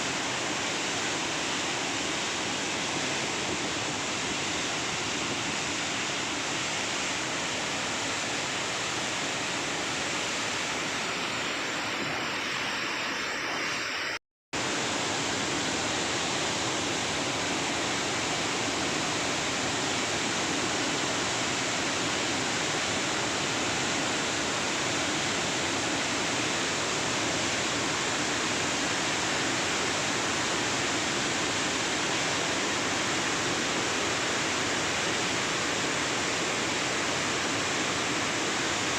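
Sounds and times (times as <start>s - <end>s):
water rushing through dam spillway: 0.0s - 38.9s.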